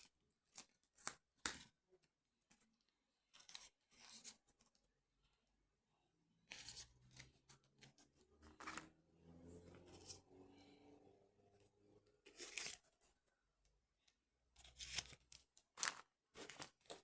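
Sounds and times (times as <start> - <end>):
crinkling and tearing: 12.2 - 13.2, 14.6 - 17.0.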